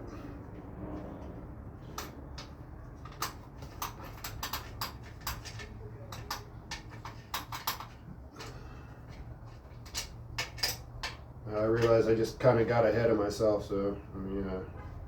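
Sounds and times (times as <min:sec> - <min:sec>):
steady low hum: 0:00.0 - 0:15.0
hand tools clicking and tapping: 0:01.9 - 0:12.1.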